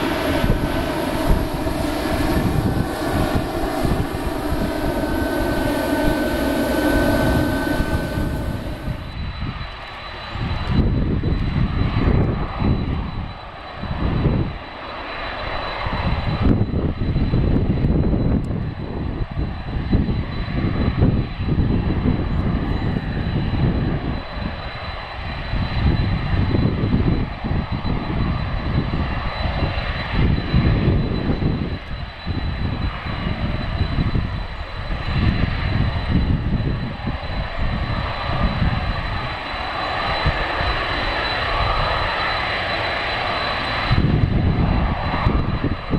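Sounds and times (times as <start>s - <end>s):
deep jet engine rumble: 0.0s - 45.9s
jet engine whine: 0.0s - 45.9s.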